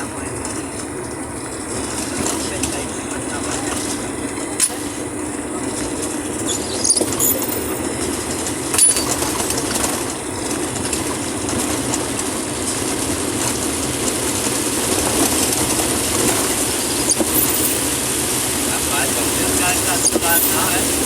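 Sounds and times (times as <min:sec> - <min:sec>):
heavy rain: 0:00.0 - 0:21.0
vehicle driving on wet road: 0:00.0 - 0:21.0
sharp knocks and rattles: 0:05.8 - 0:12.8.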